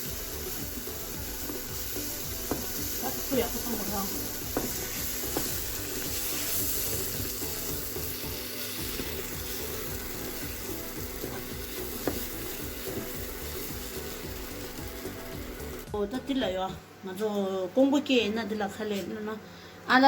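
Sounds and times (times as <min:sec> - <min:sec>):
food sizzling in a pan: 0:00.0 - 0:16.0.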